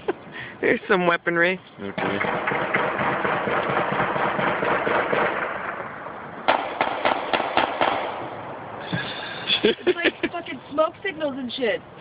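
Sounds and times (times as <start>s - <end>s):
loud bangs: 1.9s - 8.6s
rapid crackle of gunfire: 2.0s - 5.9s, 6.5s - 8.3s.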